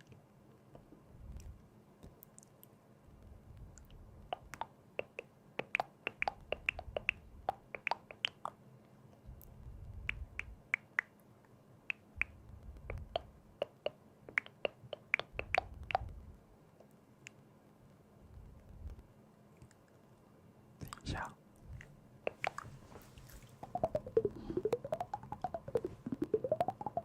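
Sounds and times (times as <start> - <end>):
sharp short clicks and taps: 4.2 - 8.6, 11.9 - 16.2.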